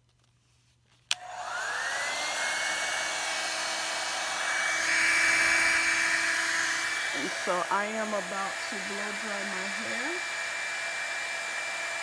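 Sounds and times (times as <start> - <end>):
hair dryer switch click: 1.1 - 1.7
hair dryer blowing: 1.1 - 12.0.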